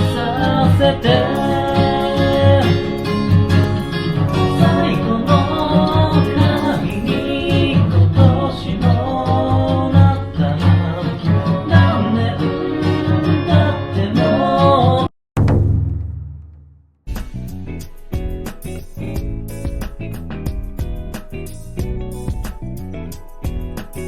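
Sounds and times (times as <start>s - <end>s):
upbeat song with guitar and vocals: 0.0s - 15.1s.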